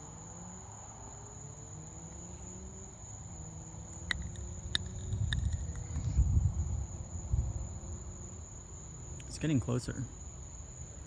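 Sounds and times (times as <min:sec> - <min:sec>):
crickets trilling: 0:00.0 - 0:11.0
sharp clicks: 0:04.0 - 0:06.0.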